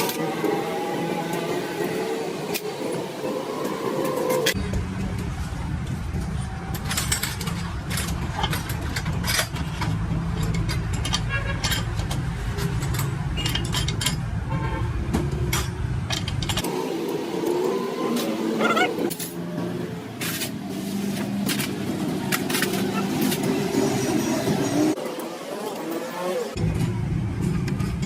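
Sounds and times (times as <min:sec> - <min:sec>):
metal tools clinking: 0:06.6 - 0:14.3.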